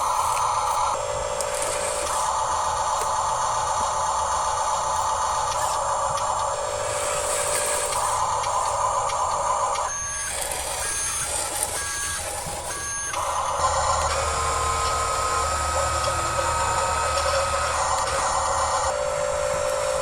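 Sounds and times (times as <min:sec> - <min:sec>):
electric motor whir: 0:00.0 - 0:20.0
reversing beeper beeps: 0:06.8 - 0:19.0.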